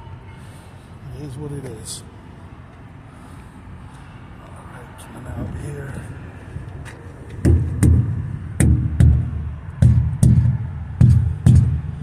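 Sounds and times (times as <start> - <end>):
rubber mallet thumping tires: 7.4 - 12.0.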